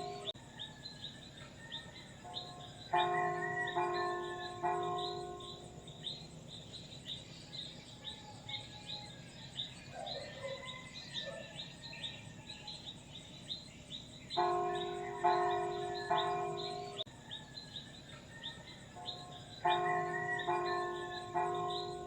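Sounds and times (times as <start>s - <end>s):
church bell ringing: 0.0s - 0.4s, 2.3s - 6.4s, 14.3s - 17.1s, 19.0s - 22.0s
bird chirping: 0.0s - 22.0s.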